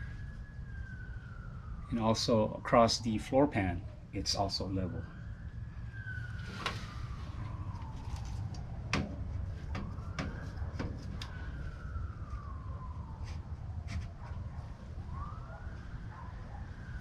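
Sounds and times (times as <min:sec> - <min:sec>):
siren wailing: 0:00.0 - 0:17.0
sharp clicks and knocks: 0:08.1 - 0:11.4.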